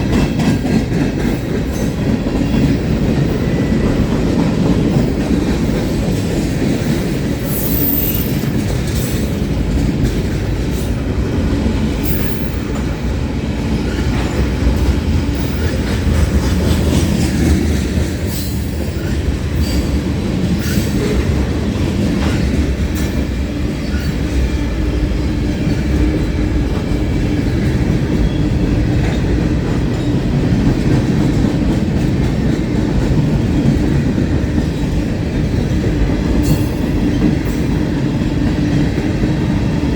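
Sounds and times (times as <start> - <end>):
train wheels rumbling on rails: 0.0 - 39.9
high wheel squeals: 7.4 - 8.6.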